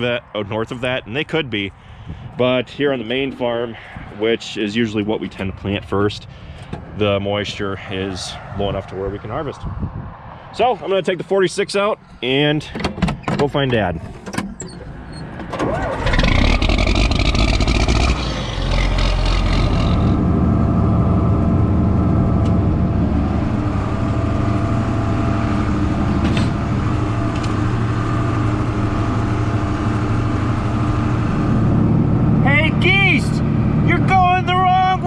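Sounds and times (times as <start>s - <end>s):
diesel tractor engine starting: 14.0s - 35.0s.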